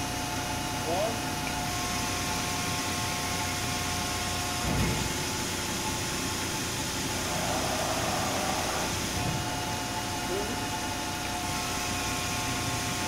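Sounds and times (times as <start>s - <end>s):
hydraulic press hum: 1.4s - 13.0s
low thump: 4.6s - 5.2s.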